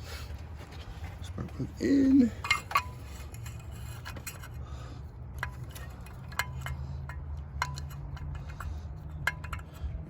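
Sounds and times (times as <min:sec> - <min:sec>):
metal rubbing and scraping: 0:02.2 - 0:04.7, 0:05.3 - 0:10.0.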